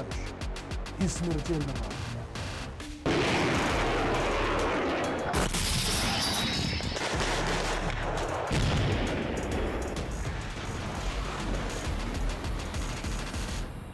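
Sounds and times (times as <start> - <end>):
music: 0.0 - 13.9
barrage of sharp bangs: 3.0 - 12.1.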